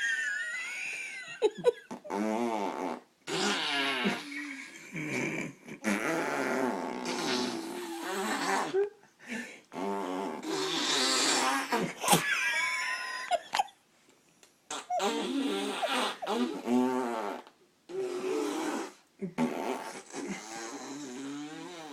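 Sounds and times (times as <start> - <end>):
person blowing raspberries: 1.9 - 9.0, 9.7 - 12.2, 14.7 - 21.9
squeaky high mouth sound: 2.2 - 4.7, 5.8 - 9.0, 14.7 - 21.9.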